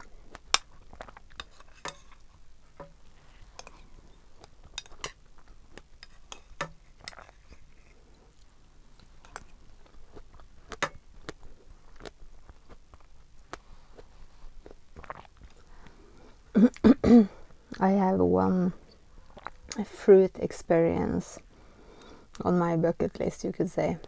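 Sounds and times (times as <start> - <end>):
chewing strawberries: 7.1 - 16.8, 19.2 - 19.8.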